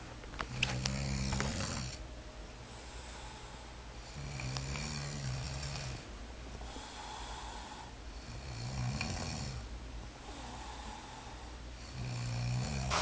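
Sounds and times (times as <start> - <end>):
person snoring: 0.5 - 2.0, 4.0 - 6.1, 6.7 - 13.0
breathy out-breath: 6.6 - 8.0, 10.2 - 11.6.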